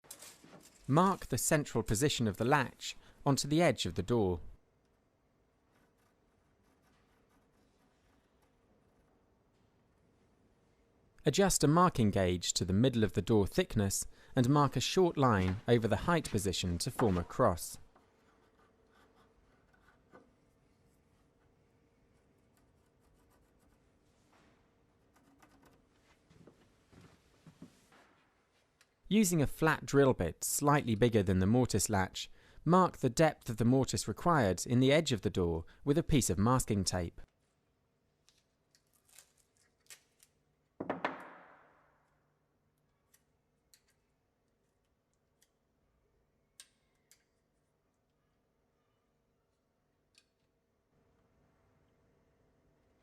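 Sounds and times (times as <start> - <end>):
marking gauge scratching wood: 5.6 - 9.0, 18.2 - 20.3.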